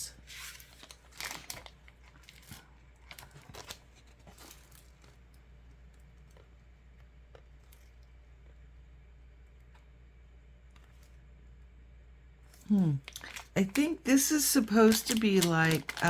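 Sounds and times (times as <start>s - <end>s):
faint steady hum: 0.0s - 16.0s
packaging crinkling and tearing: 0.3s - 5.2s, 12.8s - 16.0s.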